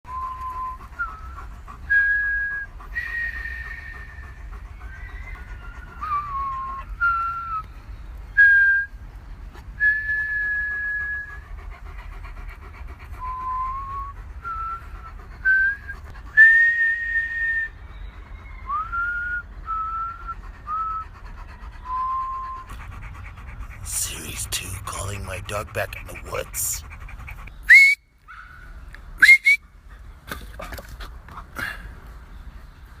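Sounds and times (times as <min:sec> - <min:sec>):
person whistling: 0:15.5 - 0:17.7, 0:27.7 - 0:28.0, 0:29.2 - 0:29.6.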